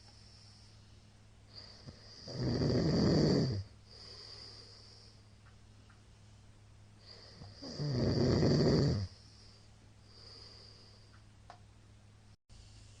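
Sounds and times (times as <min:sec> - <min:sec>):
soft breath: 0:00.0 - 0:02.3, 0:03.8 - 0:07.6, 0:09.1 - 0:11.3
man snoring: 0:01.5 - 0:05.0, 0:07.0 - 0:09.3.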